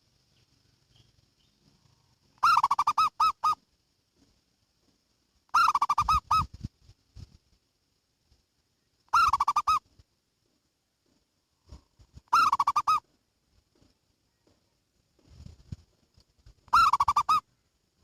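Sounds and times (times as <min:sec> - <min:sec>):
dove cooing: 0:01.8 - 0:03.6, 0:05.5 - 0:06.5, 0:09.1 - 0:09.8, 0:12.3 - 0:13.0, 0:16.7 - 0:17.4.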